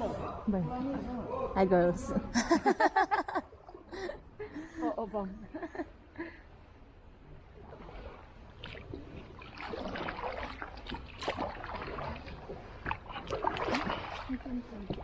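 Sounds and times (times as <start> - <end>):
water splashing around boat: 7.3 - 15.0.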